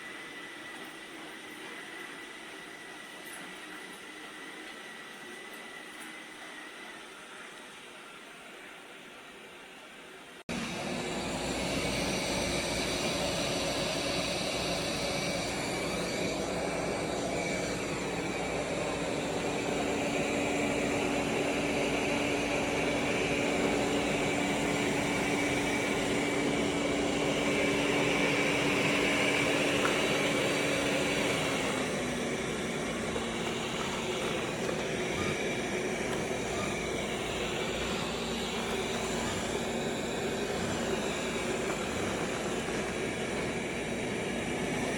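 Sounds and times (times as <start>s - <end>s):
robot vacuum whirring: 10.5s - 44.9s.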